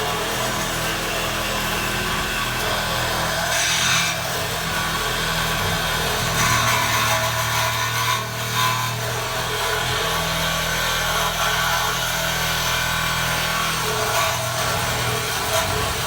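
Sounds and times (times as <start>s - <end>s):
power saw cutting metal: 0.0s - 16.0s.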